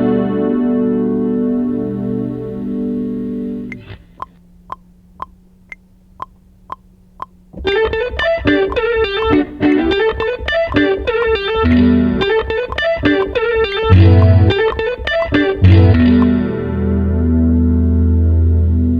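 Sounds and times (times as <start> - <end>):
faint hum: 0.0 - 18.9
guitar-like plucked riff: 0.0 - 18.9
sharp beat clicks: 3.7 - 16.6.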